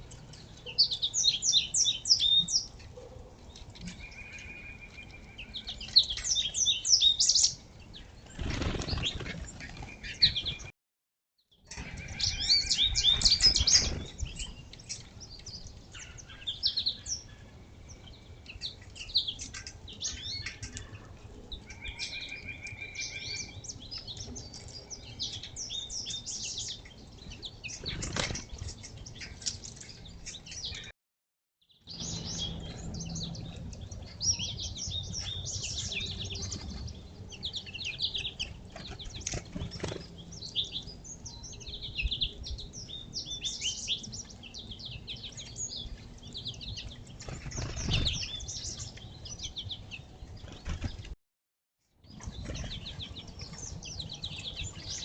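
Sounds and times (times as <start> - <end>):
songbirds chirping: 0.0 - 10.7, 11.5 - 30.9, 31.6 - 51.2, 51.8 - 55.0
wings fluttering: 8.2 - 10.7, 12.9 - 15.1, 27.7 - 30.2, 38.4 - 40.2, 46.6 - 48.9, 50.3 - 51.2.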